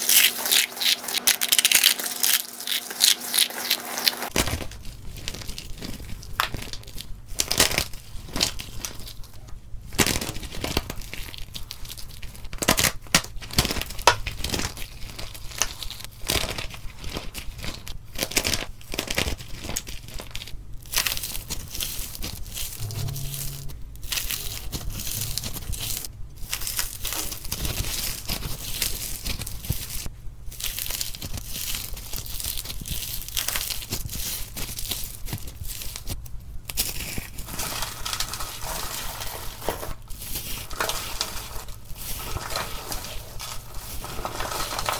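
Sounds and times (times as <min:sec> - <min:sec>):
dry block crumbling and crunching: 0:40.7 - 0:44.9.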